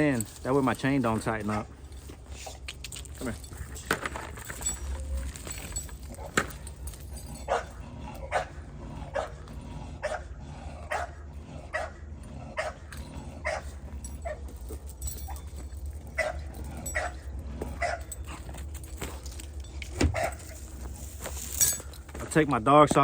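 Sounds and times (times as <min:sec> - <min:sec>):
dog barking: 0:07.4 - 0:09.4, 0:10.0 - 0:14.5, 0:16.1 - 0:18.4, 0:20.1 - 0:20.6.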